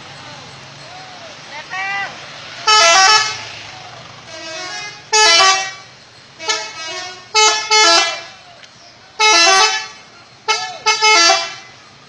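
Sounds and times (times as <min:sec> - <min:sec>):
bus horn playing multi-note tune: 0:02.6 - 0:03.5, 0:04.2 - 0:08.4, 0:09.2 - 0:11.8.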